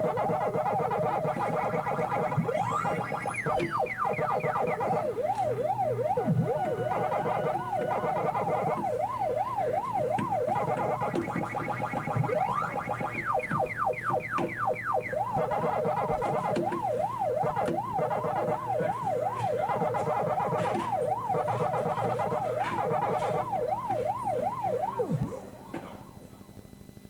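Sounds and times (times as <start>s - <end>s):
siren sweeping and yelping: 0.0s - 26.4s.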